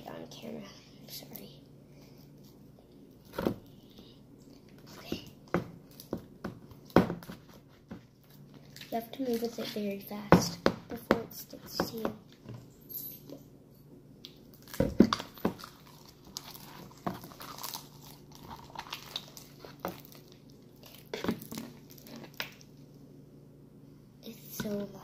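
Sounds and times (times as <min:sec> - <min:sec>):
slime squelching and smacking: 0:01.3 - 0:12.4, 0:14.2 - 0:23.0.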